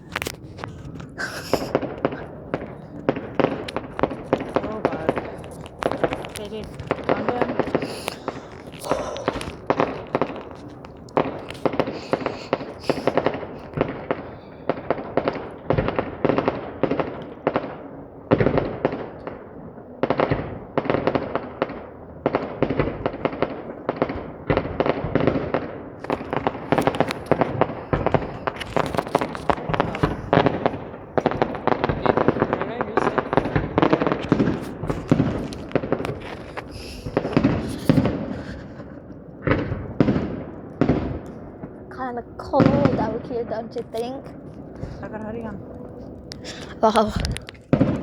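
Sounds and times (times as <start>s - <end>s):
fireworks bangs and crackling: 0.0s - 48.0s.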